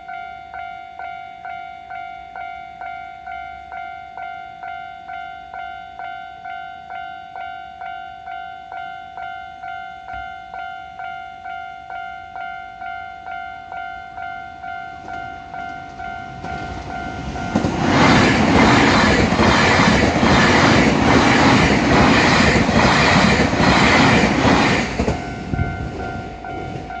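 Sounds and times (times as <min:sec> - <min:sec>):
train passing with wheel clatter: 0:11.4 - 0:27.0.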